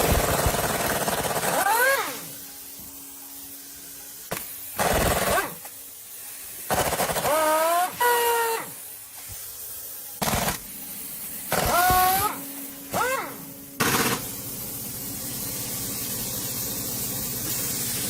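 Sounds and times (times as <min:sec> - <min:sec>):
impact wrench hammering: 0:11.5 - 0:12.3.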